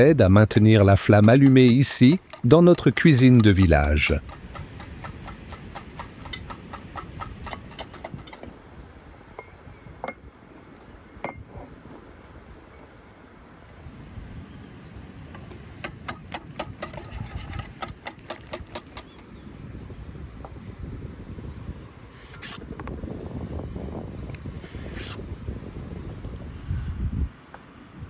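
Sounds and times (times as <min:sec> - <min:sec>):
metal utensil clicking on dish: 0:00.0 - 0:08.4, 0:15.8 - 0:19.2.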